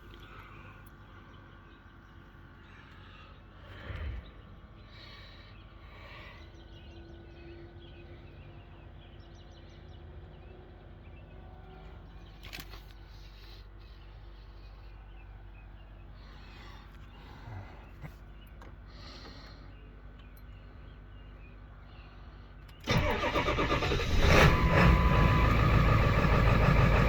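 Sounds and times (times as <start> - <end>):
diesel engine idling roughly: 22.9 - 27.0.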